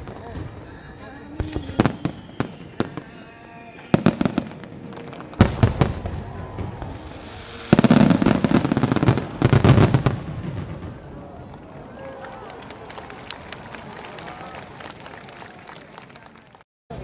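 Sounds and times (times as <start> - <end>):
fireworks bursting: 0.0 - 11.6
crackling fireworks bursts: 0.0 - 15.2
rumbling echo: 4.1 - 11.8.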